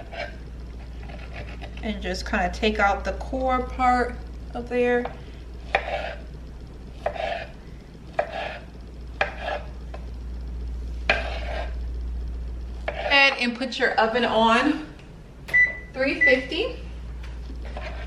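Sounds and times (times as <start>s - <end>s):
knife slicing peaches: 8.2s - 8.6s.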